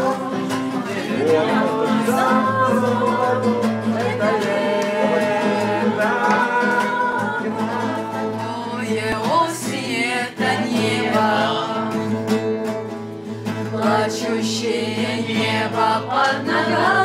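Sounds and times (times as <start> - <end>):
person singing: 0.0 - 12.4, 13.4 - 17.0
acoustic guitar: 0.0 - 17.0.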